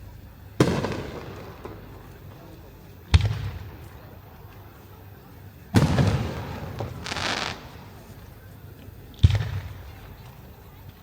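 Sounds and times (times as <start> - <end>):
firework shell booming: 0.6 - 1.7
firework burst hiss: 5.8 - 8.0.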